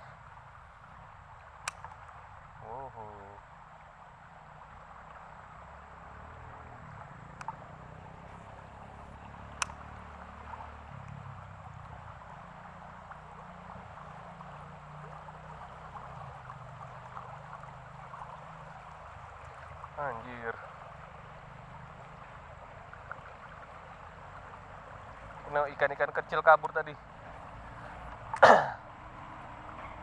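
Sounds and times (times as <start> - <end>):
floodwater rushing: 0.0 - 30.0
sharp clicks: 1.6 - 2.0, 9.5 - 9.8.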